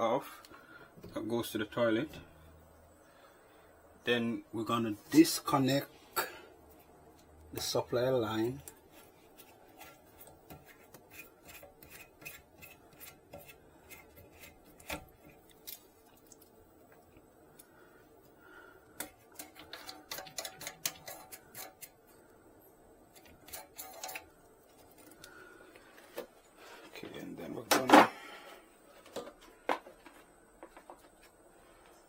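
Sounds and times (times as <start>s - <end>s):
tool clicking and scraping: 8.5s - 15.4s, 19.0s - 22.0s, 23.1s - 25.2s.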